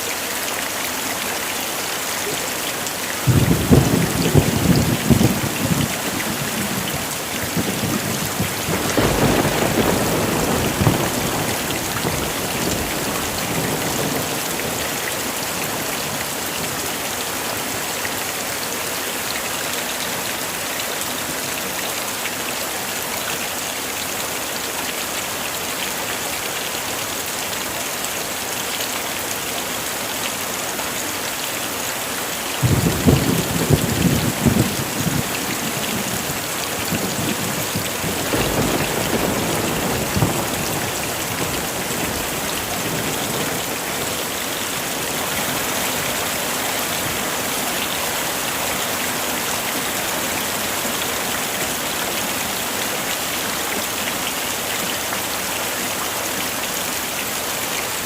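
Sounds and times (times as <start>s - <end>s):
heavy rain falling: 0.0s - 58.0s
thunder crack and rumble: 3.3s - 14.8s, 32.6s - 36.2s, 36.8s - 43.8s.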